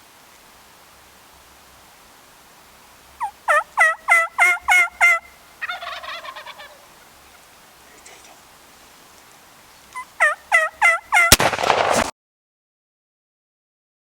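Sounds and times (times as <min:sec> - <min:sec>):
turkey gobble: 0:03.1 - 0:11.4
turkey yelps: 0:03.2 - 0:08.4, 0:09.7 - 0:11.4.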